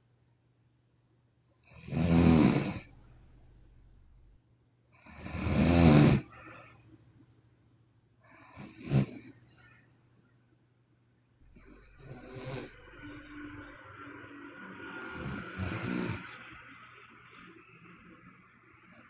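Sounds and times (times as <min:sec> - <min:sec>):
quiet breathing: 0:01.6 - 0:07.3, 0:08.2 - 0:10.6, 0:11.4 - 0:19.0
woman snoring: 0:01.7 - 0:02.9, 0:05.1 - 0:06.4, 0:11.5 - 0:13.6, 0:14.9 - 0:16.4.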